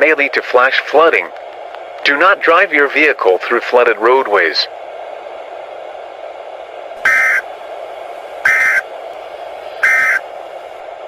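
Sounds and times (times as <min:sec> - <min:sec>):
low static hiss: 0:00.0 - 0:11.0
warbling data tone bursts: 0:07.0 - 0:07.4, 0:08.4 - 0:08.8, 0:09.8 - 0:10.2.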